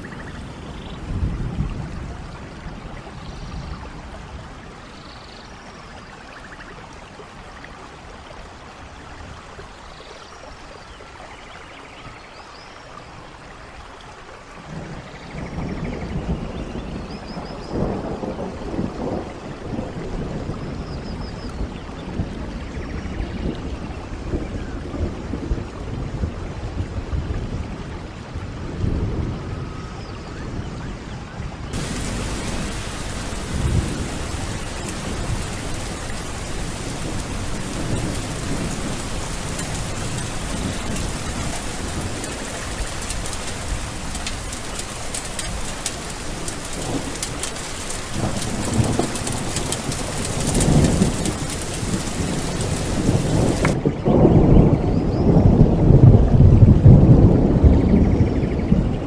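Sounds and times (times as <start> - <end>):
heavy rain hiss: 0.0 - 3.8, 31.8 - 53.8
low rumbling thunder: 0.0 - 4.6, 31.8 - 59.0.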